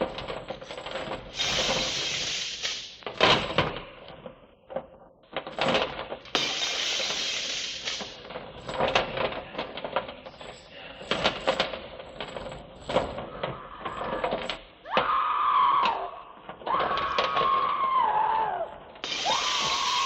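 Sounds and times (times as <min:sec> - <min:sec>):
clattering metallic clinks and knocks: 0:00.0 - 0:02.1, 0:05.4 - 0:14.8, 0:19.0 - 0:20.0
hiss: 0:01.3 - 0:03.0, 0:06.4 - 0:08.2, 0:19.0 - 0:20.0.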